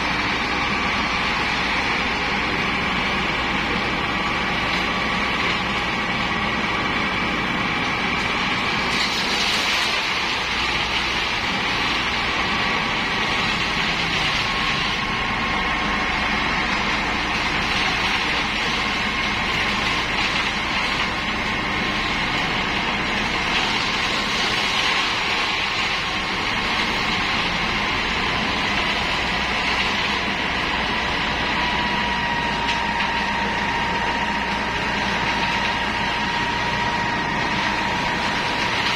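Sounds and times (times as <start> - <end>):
excavator diesel engine running: 0.0 - 38.9
steady hydraulic whine: 0.0 - 38.9.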